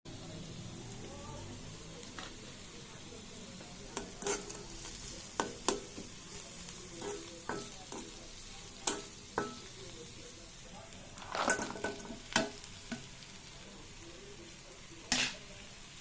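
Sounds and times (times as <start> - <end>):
food sizzling in hot oil: 0.1 - 16.0
utensil clinking against pan: 7.0 - 8.2, 8.8 - 9.7.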